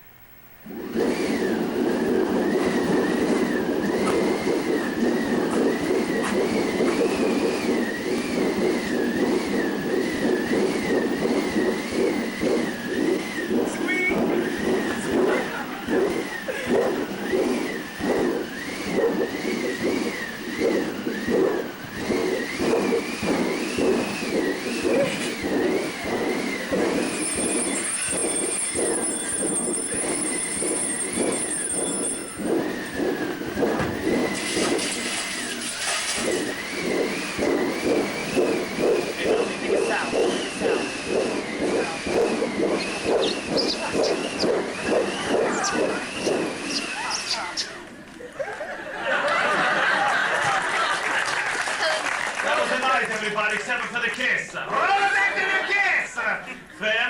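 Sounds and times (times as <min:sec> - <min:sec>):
wind machine whooshing: 0:00.6 - 0:48.1
high wavering whistling tone: 0:00.8 - 0:47.8
thin high wavering whistle: 0:25.8 - 0:39.6.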